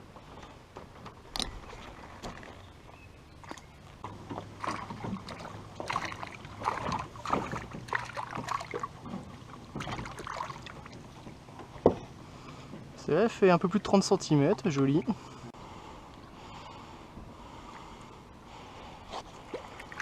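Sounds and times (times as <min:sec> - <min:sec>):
water splashing and sloshing: 0:00.0 - 0:20.0
knocks against rowboat: 0:11.7 - 0:12.1.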